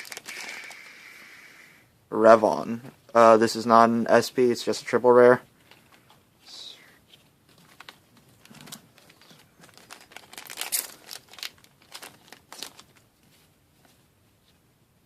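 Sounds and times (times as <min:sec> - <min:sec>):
wrappers and cards crinkling: 0:00.0 - 0:01.0, 0:07.0 - 0:14.0.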